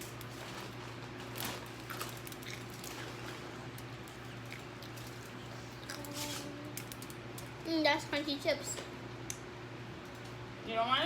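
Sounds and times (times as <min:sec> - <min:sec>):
steady low hum: 0:00.0 - 0:11.0
person chewing crunchy food: 0:01.2 - 0:06.2.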